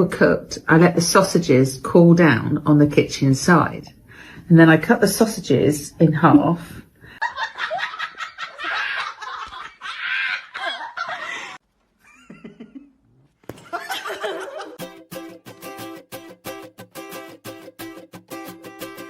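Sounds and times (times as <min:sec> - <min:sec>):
person laughing hard: 0:07.2 - 0:13.0, 0:13.6 - 0:14.8
guitar strum: 0:14.8 - 0:19.0.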